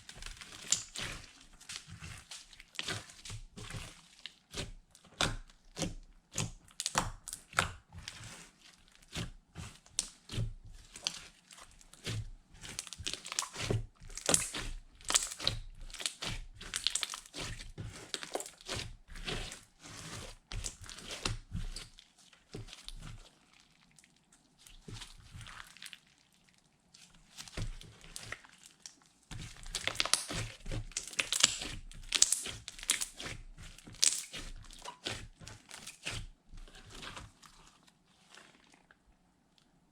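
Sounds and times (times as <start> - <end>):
slime crackling and popping: 0.2 - 3.4, 6.3 - 7.8, 12.7 - 18.8, 27.5 - 37.2.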